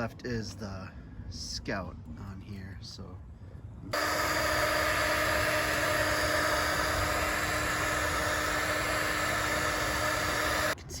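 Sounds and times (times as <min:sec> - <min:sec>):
heat gun motor hum: 0:03.9 - 0:10.8
heat gun air rushing: 0:03.9 - 0:11.0.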